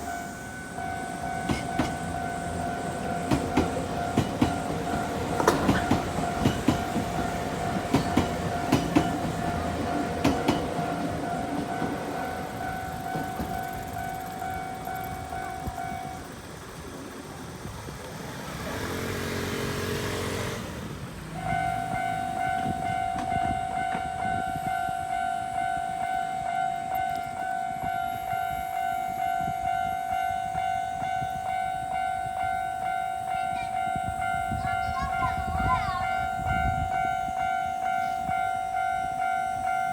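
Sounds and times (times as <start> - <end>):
level crossing warning bell: 0.0 - 16.6, 21.3 - 39.9
train clattering over rail joints: 0.0 - 28.6
train horn: 21.6 - 39.9.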